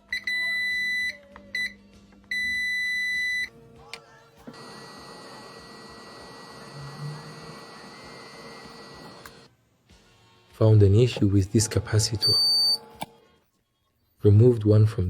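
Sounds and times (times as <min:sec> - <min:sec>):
electronic beeper beeping: 0:12.2 - 0:12.9.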